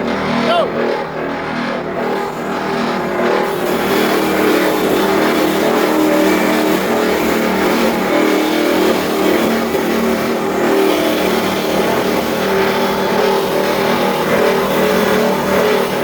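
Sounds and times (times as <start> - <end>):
wood grinding noise: 0.0 - 16.0
electric motor humming: 2.0 - 16.0.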